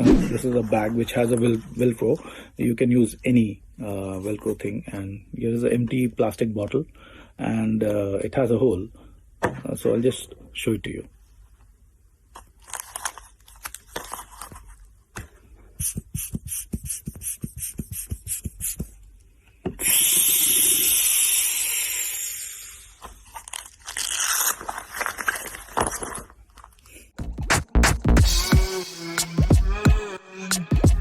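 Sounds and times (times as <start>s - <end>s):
quick clicks and puffs: 15.7s - 19.0s
velcro ripping apart: 22.9s - 26.8s
velcro crackling: 23.0s - 27.0s.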